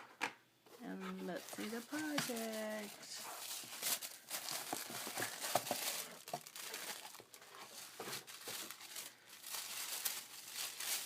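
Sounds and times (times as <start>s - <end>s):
packaging crinkling and rustling: 0.8s - 11.0s.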